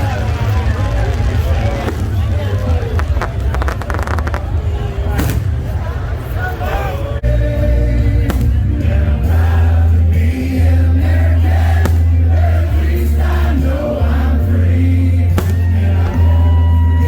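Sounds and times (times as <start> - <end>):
loud steady bass: 0.0 - 6.3, 7.2 - 17.0
music with singing voices: 6.3 - 17.0.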